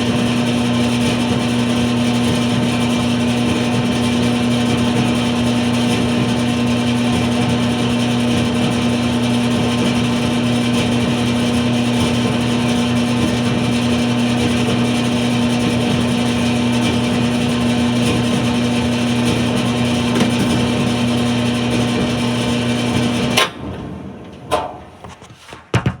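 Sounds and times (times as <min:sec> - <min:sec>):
dryer humming and whirring: 0:00.0 - 0:25.1
sharp knocks: 0:25.6 - 0:26.0.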